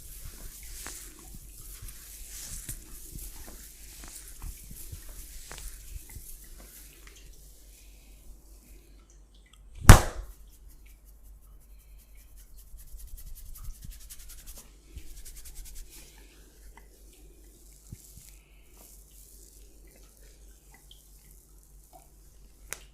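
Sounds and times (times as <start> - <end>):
hands rubbing skin: 0.0 - 8.7, 9.9 - 22.9
loud smack on skin: 9.8 - 10.3.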